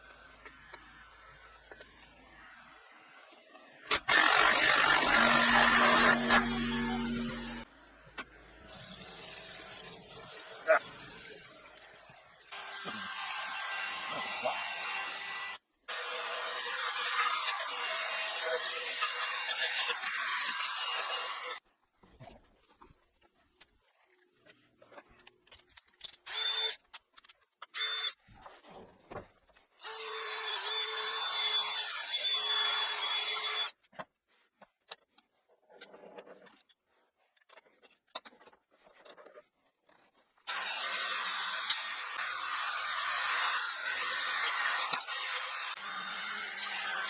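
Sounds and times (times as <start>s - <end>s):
power tool scouring metal: 3.9s - 7.6s, 12.5s - 21.6s, 40.5s - 47.0s.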